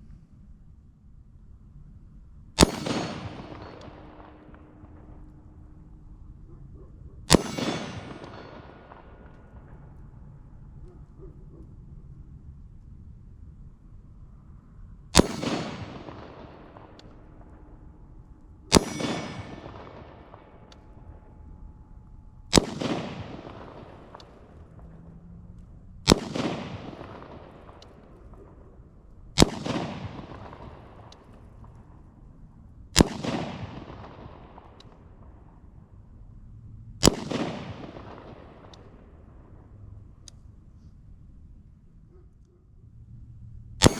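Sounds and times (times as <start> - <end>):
gunshots with long echo: 2.4 - 12.4, 15.1 - 42.3, 43.5 - 43.9.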